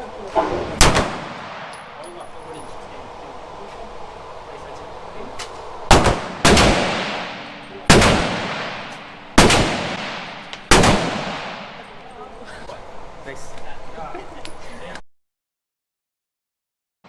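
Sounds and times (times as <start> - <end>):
pistol shots with echo: 0.8 - 2.1, 5.9 - 12.0.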